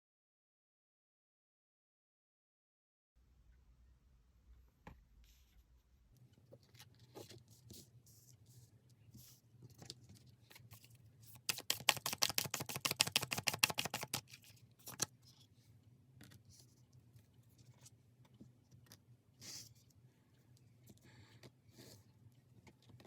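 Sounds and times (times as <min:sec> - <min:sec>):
cards being shuffled: 0:10.6 - 0:15.1.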